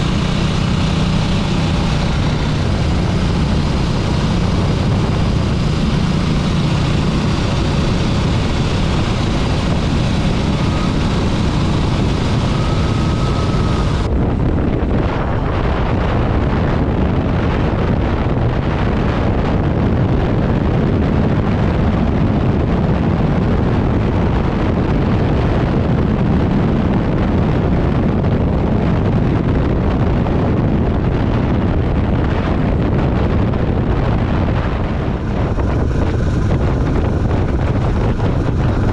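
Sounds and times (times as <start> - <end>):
motorcycle engine running: 0.0 - 38.9
wind noise on microphone: 0.0 - 38.9.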